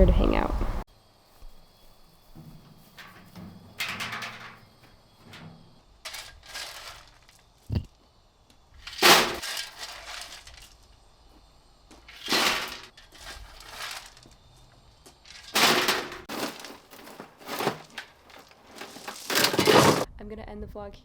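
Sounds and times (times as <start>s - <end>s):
clattering crashing bursts: 5.3s - 7.4s, 8.8s - 10.8s, 12.1s - 14.3s, 15.3s - 20.1s.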